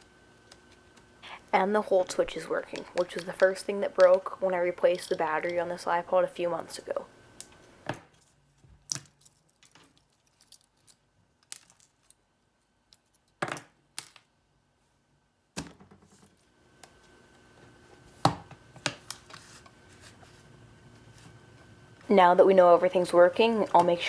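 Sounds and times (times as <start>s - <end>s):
small parts clicking and tapping: 2.7s - 4.4s, 8.8s - 12.2s, 12.9s - 14.3s.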